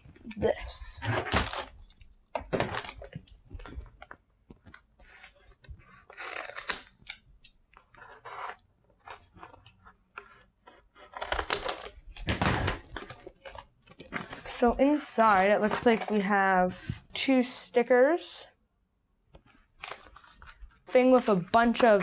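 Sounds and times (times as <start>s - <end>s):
packaging rustling and tearing: 1.1s - 7.2s, 7.8s - 16.2s, 19.6s - 22.0s.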